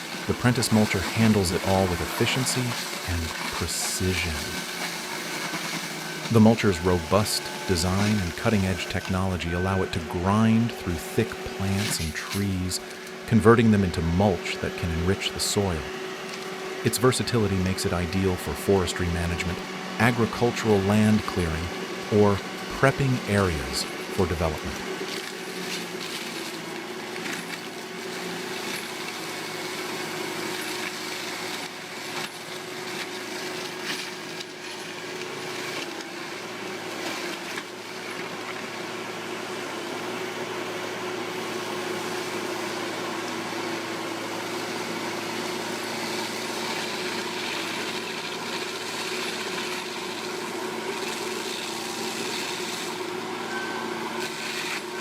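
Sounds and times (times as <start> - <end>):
mulcher engine drone: 0.0 - 29.9, 40.0 - 55.0
grinding noise: 5.5 - 15.9.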